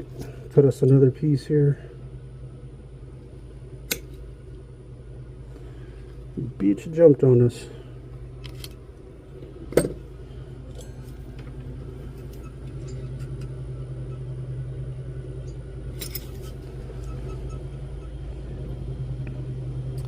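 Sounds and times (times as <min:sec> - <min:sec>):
steady low hum: 0:00.0 - 0:20.0
metal tool clicks and clinks: 0:15.5 - 0:16.6.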